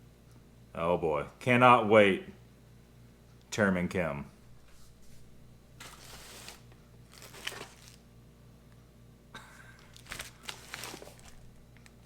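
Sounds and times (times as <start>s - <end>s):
packaging rustling and crinkling: 5.8s - 8.1s, 9.8s - 12.0s.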